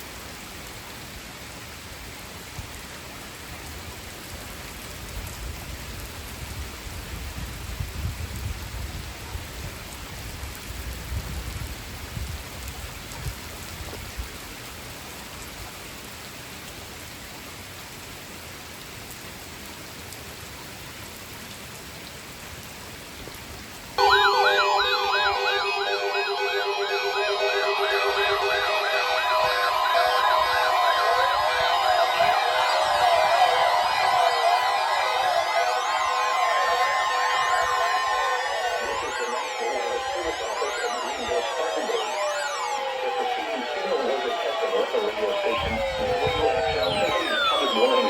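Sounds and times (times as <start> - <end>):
steady rain-like hiss: 0.0 - 48.0
warbling siren-like alert tone: 24.0 - 48.0.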